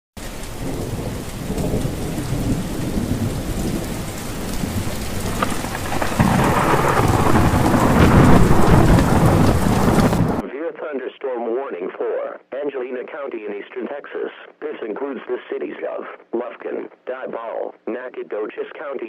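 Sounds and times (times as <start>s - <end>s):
rain falling steadily: 0.2s - 10.4s
thunder rumbling: 0.4s - 10.4s.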